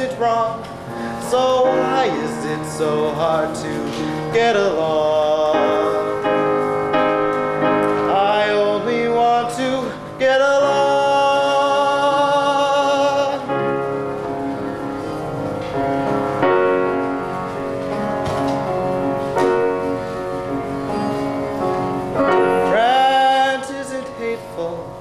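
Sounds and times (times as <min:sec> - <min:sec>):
person singing with vibrato: 0:00.0 - 0:06.8, 0:08.0 - 0:13.8, 0:22.4 - 0:25.0
piano accompaniment: 0:00.0 - 0:25.0.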